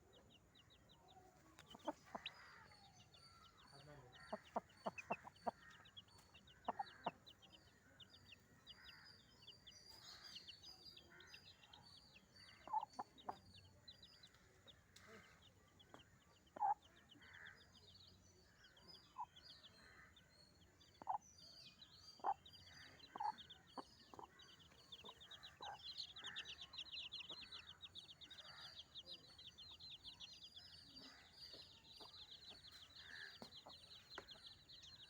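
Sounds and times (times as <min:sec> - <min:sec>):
hen clucking: 0:01.6 - 0:02.4, 0:04.2 - 0:07.2, 0:25.0 - 0:26.5.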